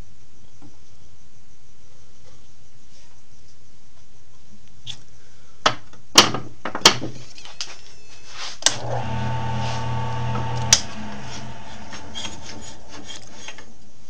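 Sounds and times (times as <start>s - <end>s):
lathe motor humming: 8.7s - 13.7s.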